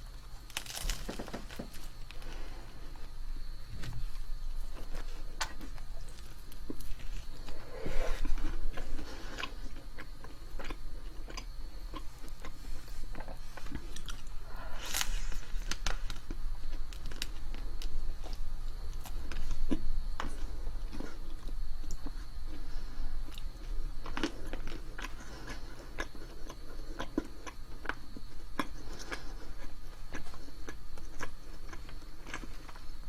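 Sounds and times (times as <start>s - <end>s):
person chewing and biting food: 0.2s - 3.2s, 4.6s - 18.4s, 23.3s - 32.8s.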